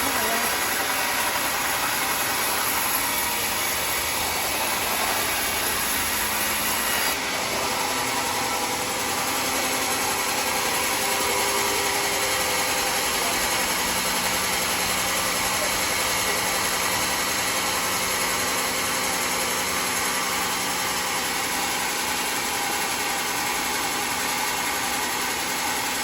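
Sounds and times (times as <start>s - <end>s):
sawmill saw cutting log: 0.0s - 26.0s.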